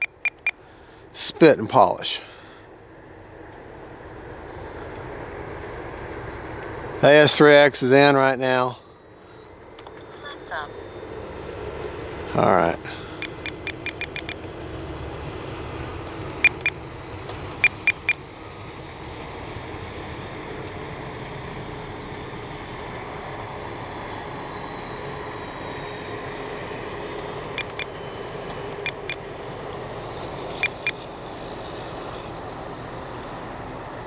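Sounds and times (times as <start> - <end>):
radio transmitter high beeps: 0.0 - 0.6, 8.4 - 14.6, 16.3 - 16.8, 17.5 - 18.2, 27.4 - 29.3, 30.4 - 31.1
outdoor air noise: 0.0 - 34.0
electric model airplane motor drone: 2.6 - 34.0.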